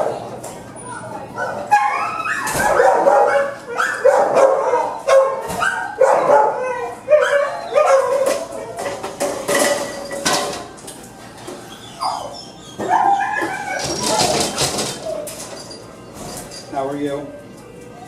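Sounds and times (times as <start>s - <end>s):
dogs barking: 1.3s - 9.1s, 11.8s - 15.4s.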